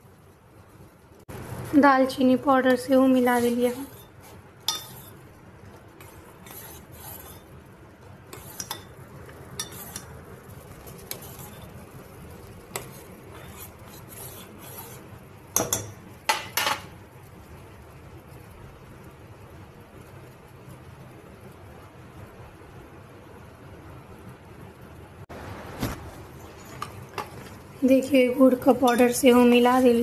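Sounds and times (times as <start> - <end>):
low steady background noise: 0.0 - 30.0
spoon clinking against pan: 4.7 - 5.1, 15.6 - 16.8, 28.8 - 29.3.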